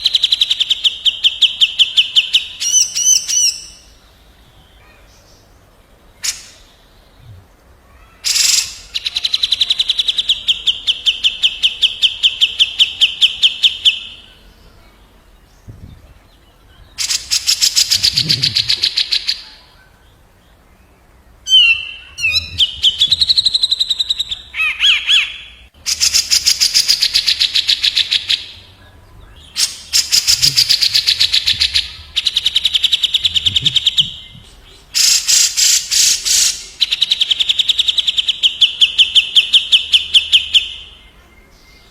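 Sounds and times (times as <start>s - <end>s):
bulbul songs: 0.0s - 41.9s
harsh rattling bird trills: 8.0s - 14.3s, 17.0s - 19.7s, 29.5s - 34.3s, 34.9s - 40.7s
whistled bird notes: 21.4s - 41.9s.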